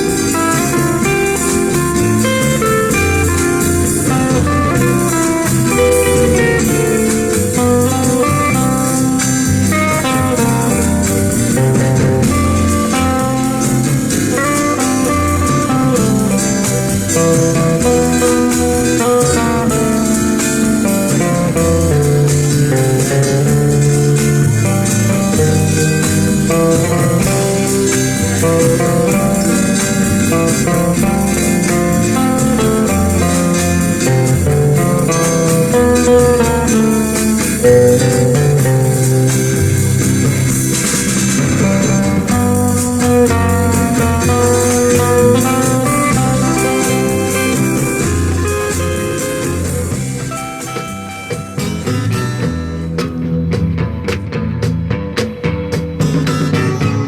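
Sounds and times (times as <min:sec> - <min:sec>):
bluesy guitar instrumental music: 0:00.0 - 0:57.0.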